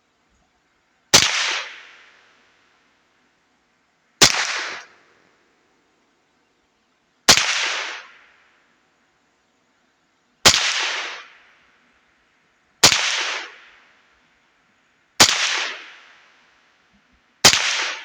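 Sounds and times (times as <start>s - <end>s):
rifle shots: 1.2s - 1.8s, 4.2s - 5.0s, 7.3s - 8.2s, 10.5s - 11.3s, 12.8s - 13.6s, 15.2s - 16.0s, 17.4s - 18.0s.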